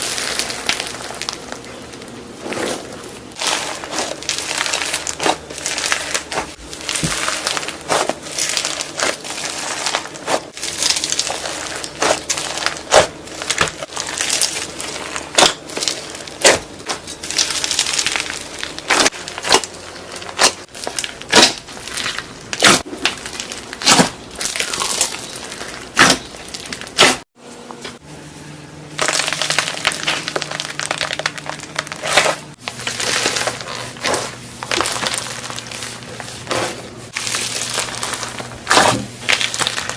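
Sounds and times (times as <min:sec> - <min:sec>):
crunchy slime crackling and popping: 0:00.0 - 0:27.3, 0:29.0 - 0:39.9.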